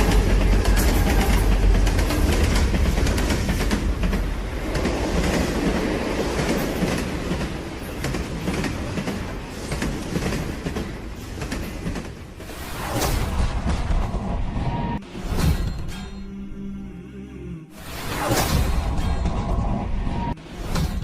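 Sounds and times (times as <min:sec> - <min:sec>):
train wheels clattering on rails: 0:00.0 - 0:12.4.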